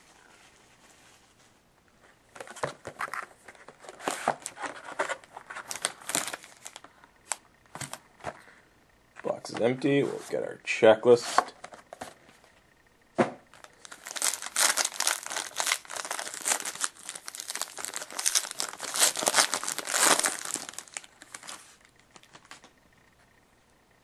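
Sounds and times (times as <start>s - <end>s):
plastic wrapper tearing and crinkling: 5.4s - 7.4s, 13.6s - 22.7s.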